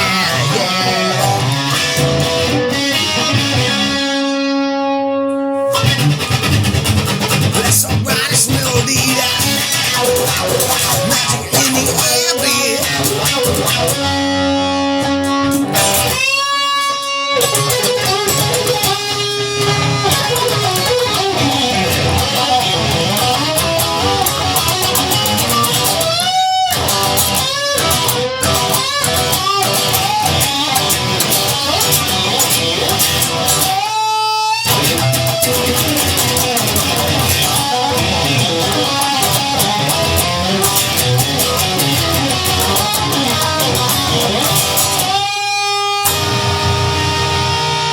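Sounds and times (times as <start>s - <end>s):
electric guitar bending notes: 0.0s - 47.9s
bass and rhythm backing: 5.8s - 16.2s.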